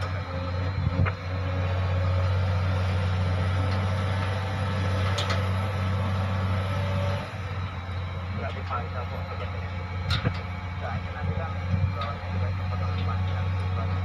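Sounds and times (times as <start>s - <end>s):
low machinery hum: 0.0s - 14.0s.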